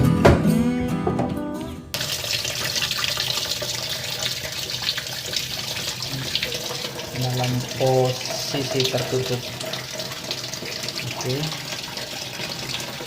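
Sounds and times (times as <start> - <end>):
acoustic guitar music: 0.0 - 2.0
water running into tub: 2.0 - 13.0.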